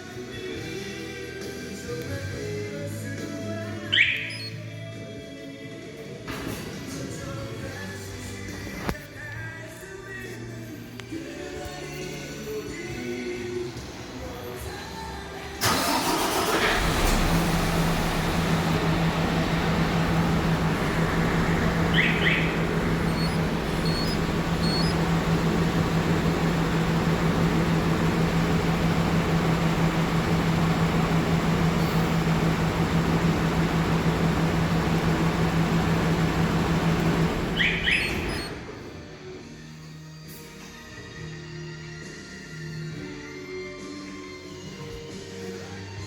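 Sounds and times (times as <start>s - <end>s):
short chirps: 3.9s - 4.6s, 18.8s - 38.6s
diesel truck engine cranking and idling: 15.5s - 39.3s.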